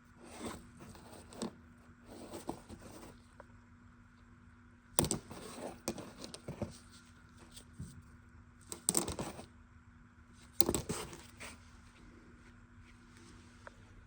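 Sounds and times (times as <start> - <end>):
faint steady hum: 0.0 - 14.0
scraping and rustling handling noise: 0.2 - 3.4, 5.0 - 9.5, 10.4 - 13.8.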